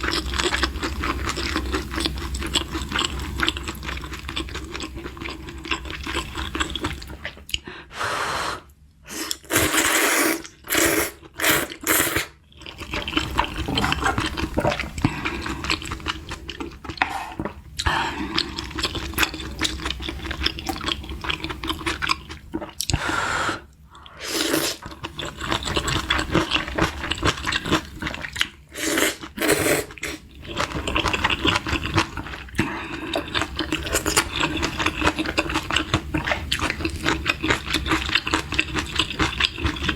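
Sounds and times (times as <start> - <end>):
wet chewing: 9.2 - 23.1, 24.0 - 39.9.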